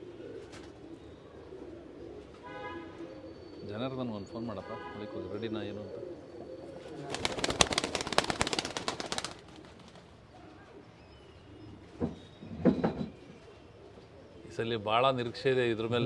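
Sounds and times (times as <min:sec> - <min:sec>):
pigeons cooing: 0:00.0 - 0:02.4
pigeon wings flapping: 0:07.0 - 0:10.2.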